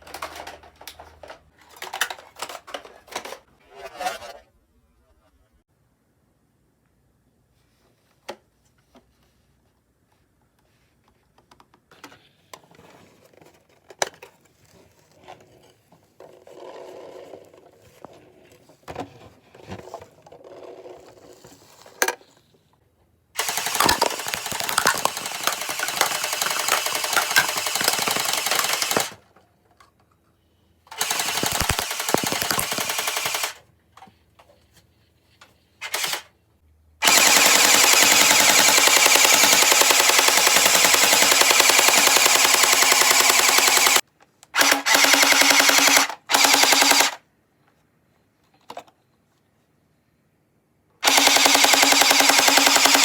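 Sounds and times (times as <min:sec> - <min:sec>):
faint clicks and handling noises: 0:00.0 - 0:03.5, 0:07.6 - 0:23.1, 0:47.6 - 0:49.8
toy gun firing rapid bursts: 0:23.4 - 0:29.2, 0:30.9 - 0:33.6, 0:35.8 - 0:36.3, 0:37.0 - 0:44.0, 0:44.6 - 0:47.2, 0:51.0 - 0:53.0.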